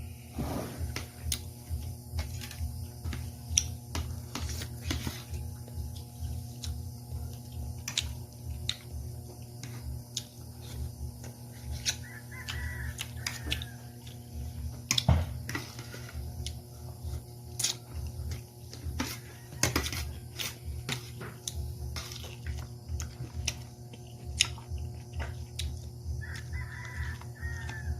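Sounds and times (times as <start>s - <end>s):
steady low hum: 0.0s - 27.9s
person chewing: 0.9s - 27.8s
utensils clicking on a plate: 17.5s - 22.5s.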